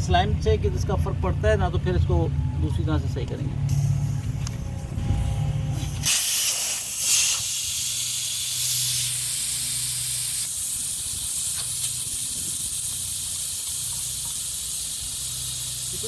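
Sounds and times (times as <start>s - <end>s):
air hissing out of tyre: 3.7s - 16.0s.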